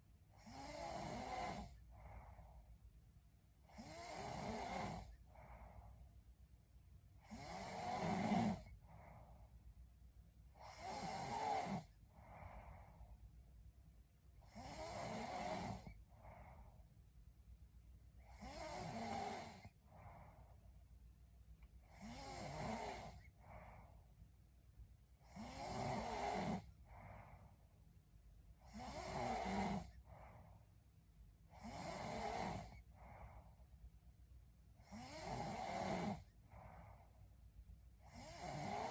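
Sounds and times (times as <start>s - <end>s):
woman snoring: 0.4s - 2.2s, 3.7s - 5.6s, 7.2s - 9.1s, 10.6s - 12.8s, 14.4s - 16.5s, 18.2s - 20.3s, 21.8s - 23.8s, 25.2s - 27.2s, 28.6s - 30.3s, 31.5s - 33.3s, 34.8s - 37.0s, 38.0s - 38.9s.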